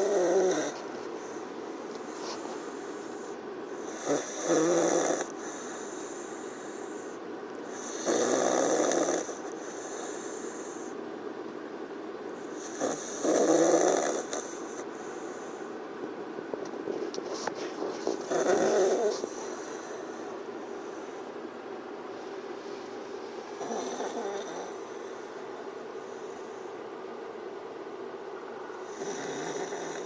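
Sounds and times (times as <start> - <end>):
pet snoring loudly: 0.0 - 1.4, 2.1 - 7.1, 7.7 - 11.0, 12.5 - 15.4, 18.0 - 20.3, 23.5 - 25.3, 28.8 - 30.0.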